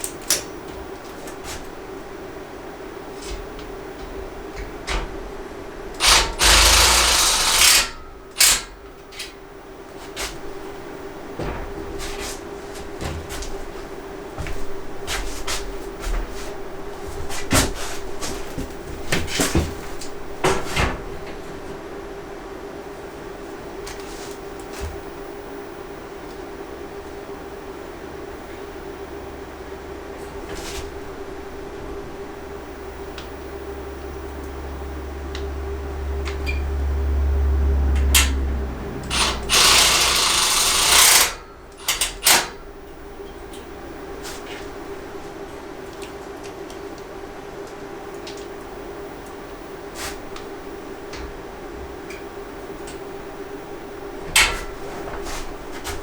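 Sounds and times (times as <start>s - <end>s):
steady low hum: 0.0s - 56.0s
handheld power tool running: 6.0s - 8.7s, 39.0s - 42.4s
parts knocking and clacking: 6.0s - 9.4s, 39.0s - 42.6s.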